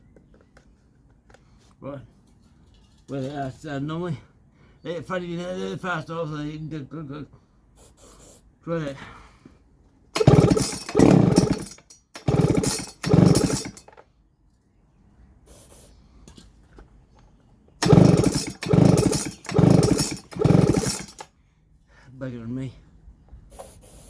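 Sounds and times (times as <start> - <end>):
chainsaw engine turning over: 10.2 - 14.0, 17.8 - 21.3
recoil starter pulls: 10.2 - 14.0, 17.8 - 21.3.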